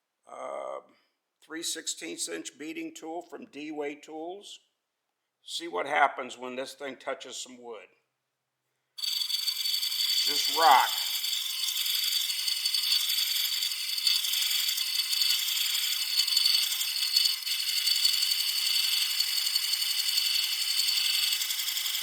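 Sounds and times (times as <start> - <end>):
lathe tool scraping wood: 9.0 - 22.0.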